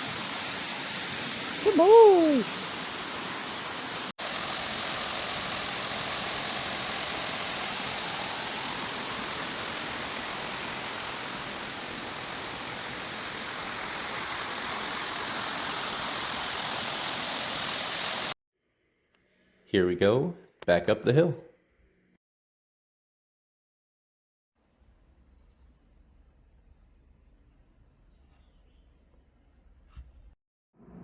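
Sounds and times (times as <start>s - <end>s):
waterfall rushing: 0.0s - 18.3s.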